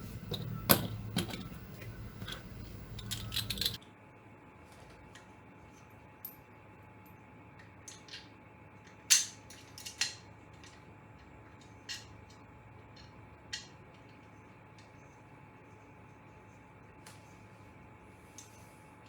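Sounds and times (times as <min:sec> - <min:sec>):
small hard parts clicking: 0:00.0 - 0:03.8.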